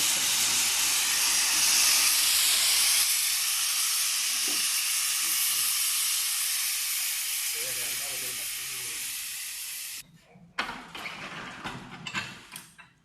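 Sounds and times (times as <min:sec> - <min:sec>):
baking machine hissing: 0:00.0 - 0:10.0.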